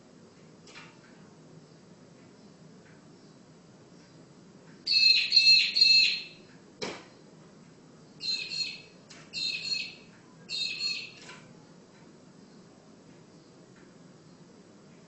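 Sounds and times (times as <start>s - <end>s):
bird calling rapid notes: 4.9s - 6.4s, 8.2s - 11.2s.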